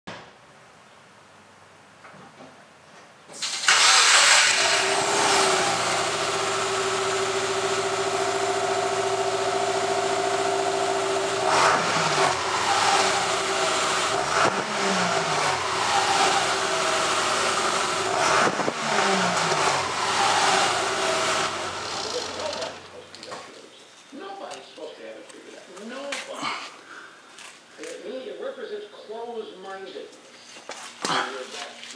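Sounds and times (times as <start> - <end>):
car engine idling and revving: 3.5 - 23.2.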